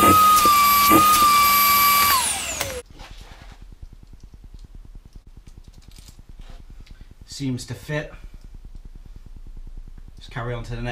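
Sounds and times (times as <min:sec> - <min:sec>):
vacuum cleaner whining: 0:00.0 - 0:02.8.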